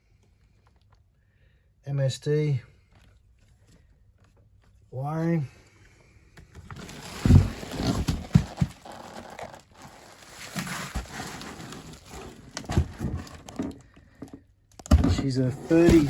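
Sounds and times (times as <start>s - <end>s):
thumps and knocks: 6.5s - 9.2s, 11.8s - 16.0s
rustling: 6.6s - 14.4s, 15.1s - 16.0s.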